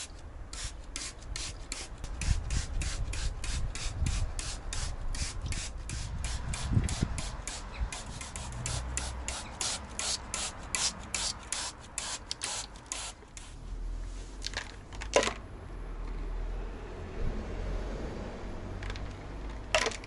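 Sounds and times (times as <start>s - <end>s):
scratchy rubbing strokes: 0.6s - 14.4s.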